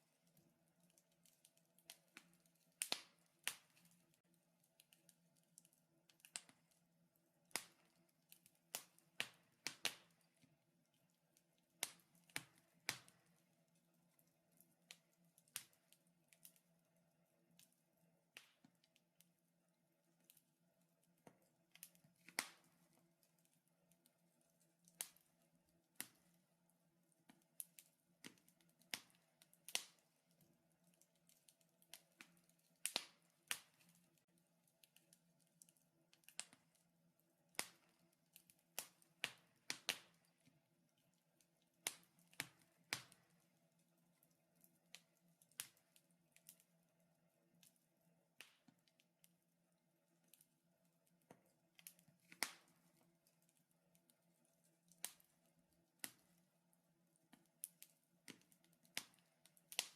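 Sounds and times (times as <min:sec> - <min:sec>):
wood fire crackling and popping: 0:00.0 - 0:16.7, 0:18.3 - 0:19.2, 0:21.0 - 0:26.5, 0:27.2 - 0:46.7, 0:48.4 - 0:49.2, 0:51.3 - 0:55.4, 0:56.0 - 0:56.4, 0:57.3 - 0:59.9.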